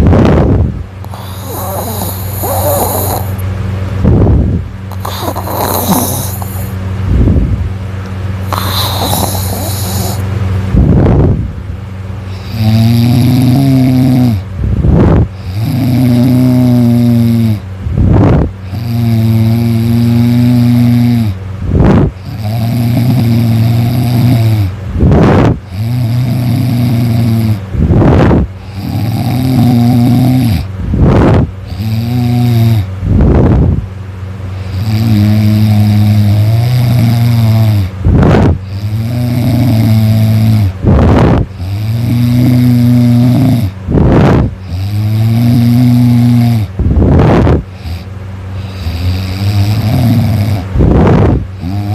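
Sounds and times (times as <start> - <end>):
person snoring loudly: 1.0 - 3.4, 4.9 - 6.8, 8.4 - 10.3, 12.3 - 14.4, 15.0 - 17.6, 18.2 - 33.7, 34.5 - 51.9.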